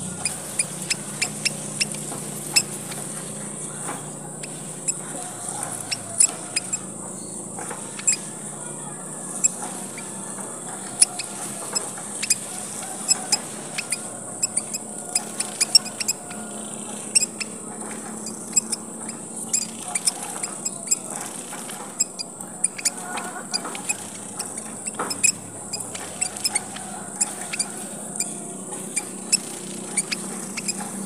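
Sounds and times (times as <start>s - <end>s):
finches chirping: 0.0s - 31.0s.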